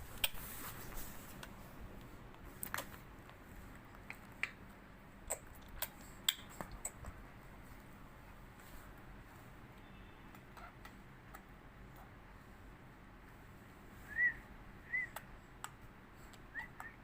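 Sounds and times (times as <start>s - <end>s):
baby clicking tongue: 5.3s - 7.0s.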